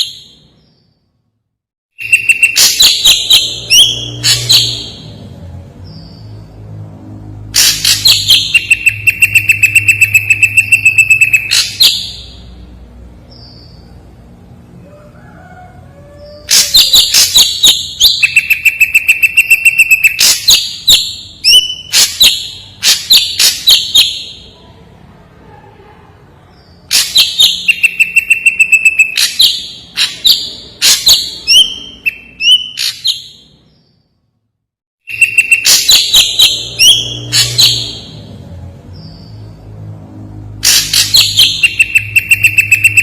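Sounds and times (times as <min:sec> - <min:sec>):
bird singing sharp repeated notes: 0:00.0 - 0:01.2, 0:01.9 - 0:06.7, 0:07.5 - 0:14.1, 0:16.5 - 0:24.6, 0:26.5 - 0:34.2, 0:35.0 - 0:39.7, 0:40.6 - 0:43.0
bird high whistle: 0:16.5 - 0:24.1, 0:41.1 - 0:43.0.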